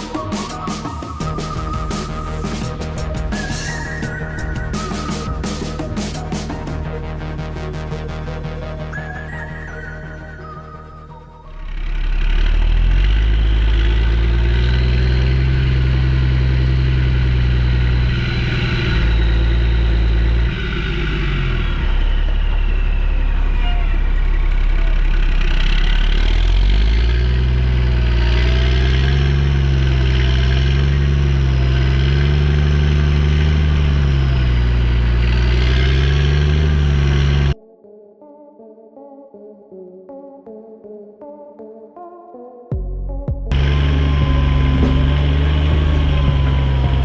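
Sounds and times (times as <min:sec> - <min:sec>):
excavator diesel engine: 0:11.7 - 0:37.6, 0:43.5 - 0:47.0.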